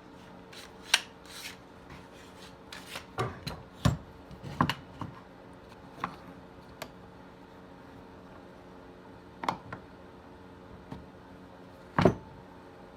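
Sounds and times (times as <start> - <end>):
hand tools scraping and knocking: 0.6 - 3.5.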